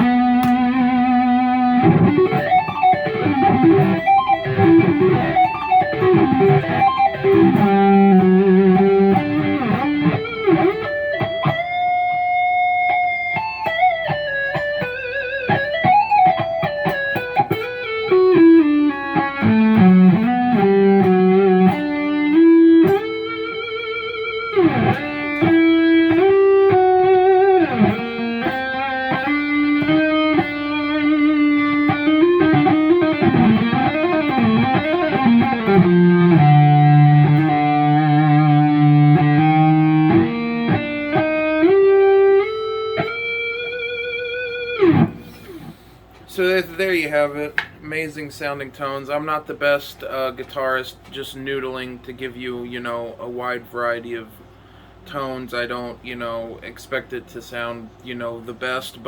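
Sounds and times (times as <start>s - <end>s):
electric guitar single-note line: 0.0s - 45.6s.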